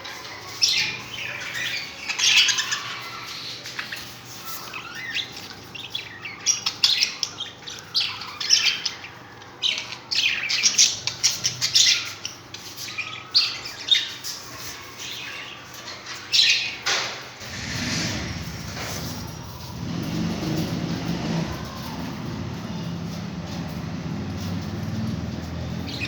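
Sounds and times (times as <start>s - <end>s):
budgerigars chirping and squawking: 0.1s - 21.7s, 22.3s - 26.0s
low rumble: 17.4s - 24.9s.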